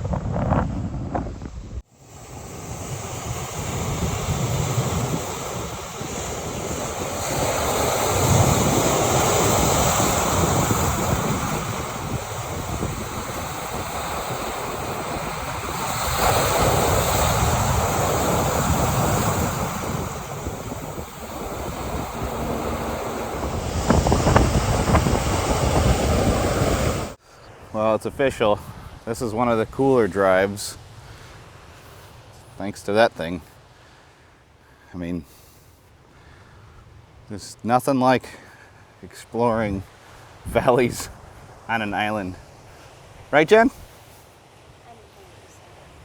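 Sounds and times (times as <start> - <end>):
wind buffeting microphone: 0.0 - 32.4
ocean waves breaking: 1.8 - 46.0.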